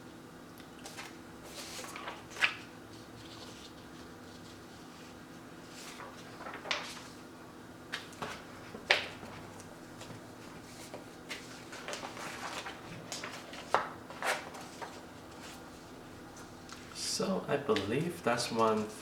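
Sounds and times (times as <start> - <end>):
paper and card rustling: 0.8 - 7.2, 7.9 - 16.5.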